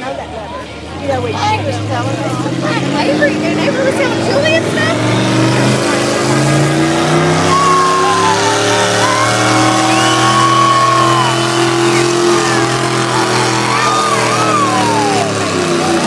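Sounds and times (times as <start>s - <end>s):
engine high-revving drone: 0.0s - 16.0s
voices: 0.0s - 16.0s.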